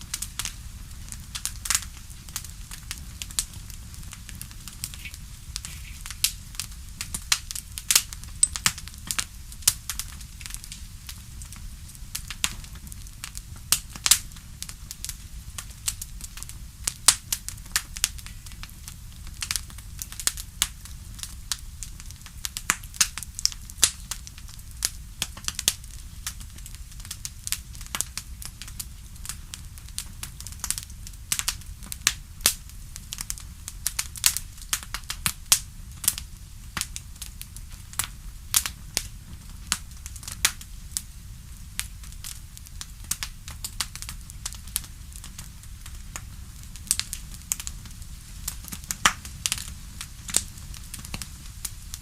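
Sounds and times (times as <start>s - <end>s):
wood fire crackling: 0.0s - 52.0s.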